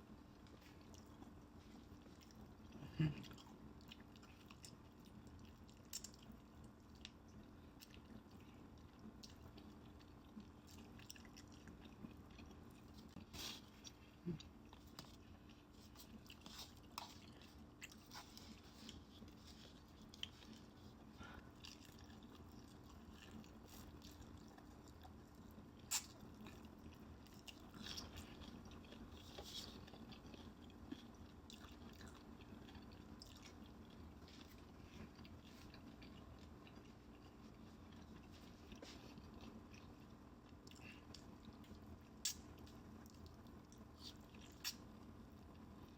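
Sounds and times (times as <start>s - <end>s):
faint steady hum: 0.0s - 45.9s
chewing crunchy fried chicken: 0.1s - 45.9s.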